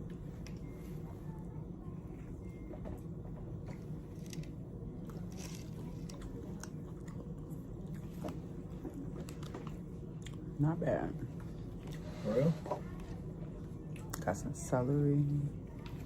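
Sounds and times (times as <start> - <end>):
steady low hum: 0.0 - 16.0
person chewing and crunching food: 3.8 - 10.5.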